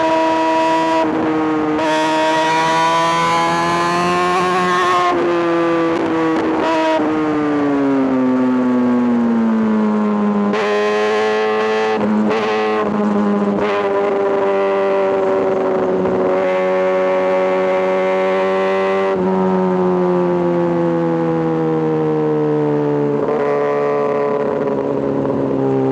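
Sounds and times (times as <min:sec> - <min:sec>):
motorcycle engine revving high: 0:00.0 - 0:08.7.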